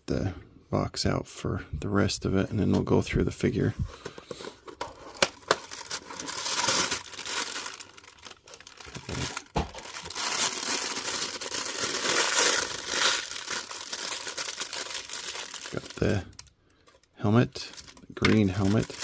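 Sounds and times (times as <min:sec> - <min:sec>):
plastic packaging crinkling: 0:04.7 - 0:19.0.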